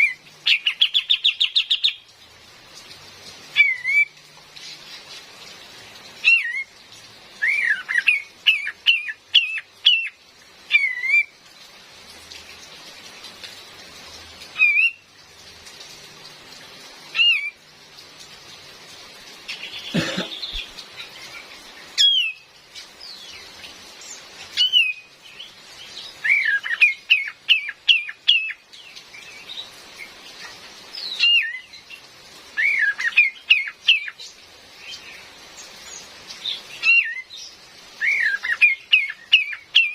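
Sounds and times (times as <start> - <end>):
rain hissing: 0.0 - 39.9
bulbul whistles and rattling calls: 3.5 - 5.2, 7.4 - 11.3, 19.5 - 21.4, 22.0 - 23.4, 24.0 - 29.7, 32.6 - 35.2, 35.8 - 39.9.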